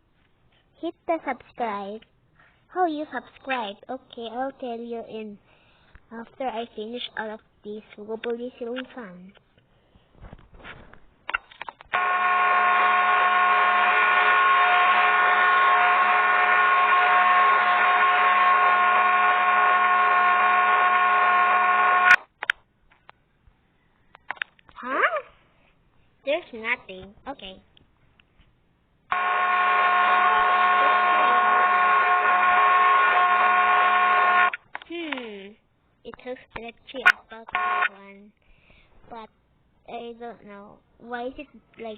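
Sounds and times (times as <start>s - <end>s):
ceiling fan motor whirring: 29.1s - 34.5s.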